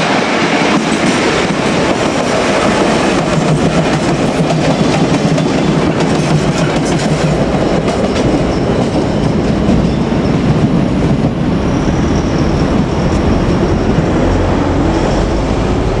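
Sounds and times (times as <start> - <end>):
train rumble: 0.0 - 16.0
train wheels clicking over rail joints: 0.6 - 11.6.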